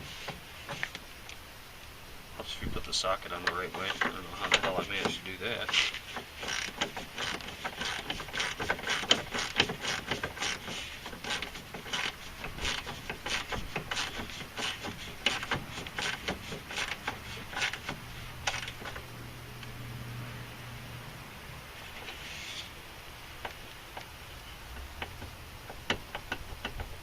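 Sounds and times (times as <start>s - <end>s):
low steady hum: 0.0s - 27.0s
ratchet wrench clicking: 5.7s - 18.8s.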